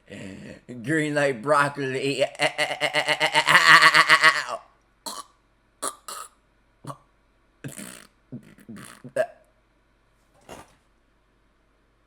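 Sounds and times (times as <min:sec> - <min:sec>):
man's throaty vocal sound: 0:00.0 - 0:00.8, 0:02.0 - 0:05.2, 0:07.7 - 0:09.3.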